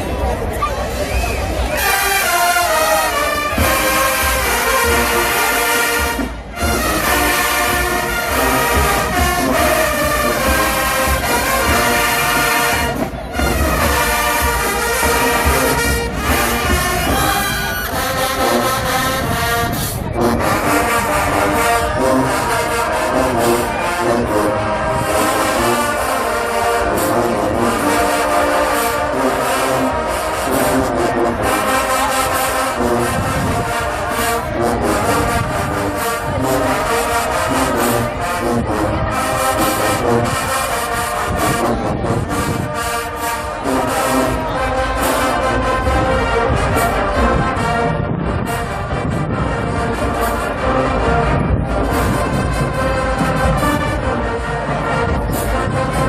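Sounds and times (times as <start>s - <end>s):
marching band brass: 0.0s - 56.0s.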